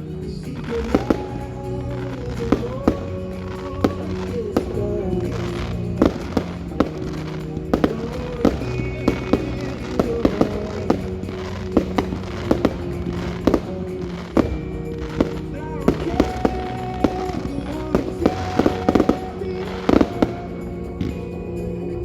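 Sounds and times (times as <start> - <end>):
fireworks banging: 0.0 - 21.7
music with singing: 0.0 - 22.0.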